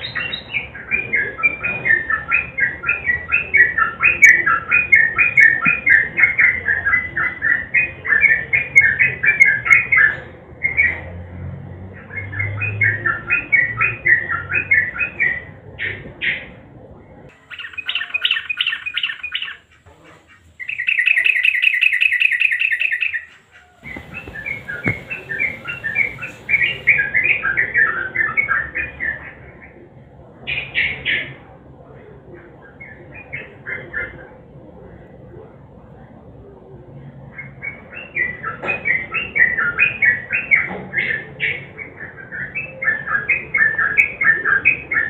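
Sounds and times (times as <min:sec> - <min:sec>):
bird chirping and trilling: 0:00.0 - 0:11.0, 0:17.3 - 0:29.4.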